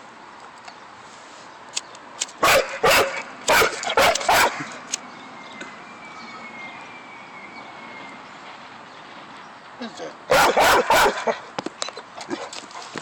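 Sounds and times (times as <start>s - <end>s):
dog barking: 2.4s - 4.7s, 10.3s - 11.5s.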